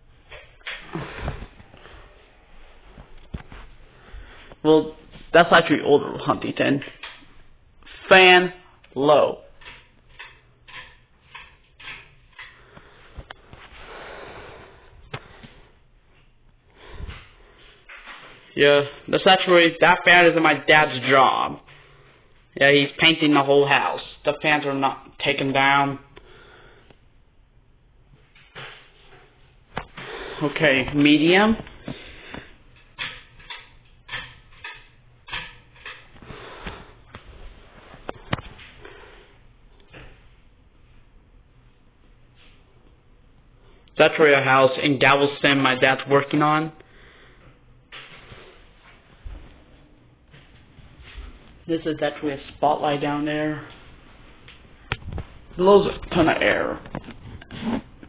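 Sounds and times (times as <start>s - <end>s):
ceiling fan air whooshing: 0.0s - 58.0s.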